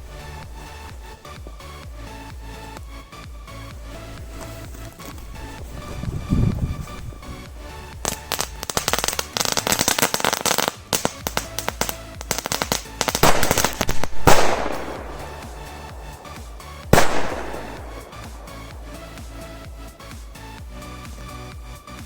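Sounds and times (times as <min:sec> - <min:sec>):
background music: 0:00.0 - 0:22.0
firecrackers crackling: 0:00.0 - 0:22.0
loud firecracker bangs: 0:08.0 - 0:19.7.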